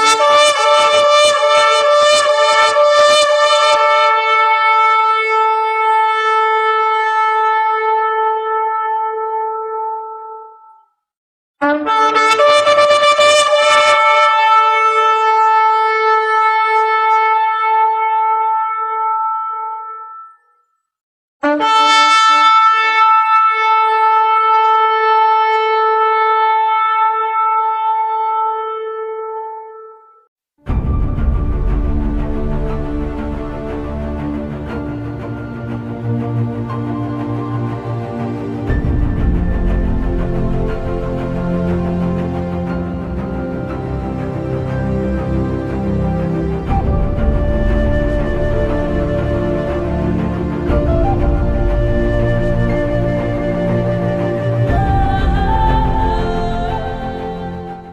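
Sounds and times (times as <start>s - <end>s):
shofar long blast: 0.0s - 10.6s, 11.6s - 20.1s, 21.4s - 30.0s.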